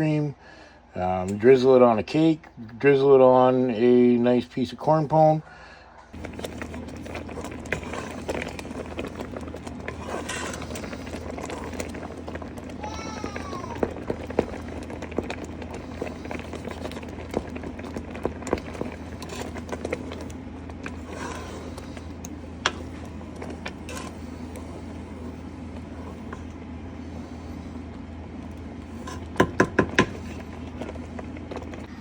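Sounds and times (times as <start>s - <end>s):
steady low hum: 0.0s - 32.0s
kitchen clicks and knocks: 29.2s - 30.2s.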